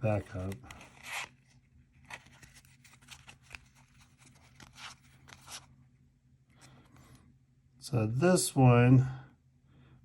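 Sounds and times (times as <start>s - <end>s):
trading cards rustling: 0.0s - 5.7s.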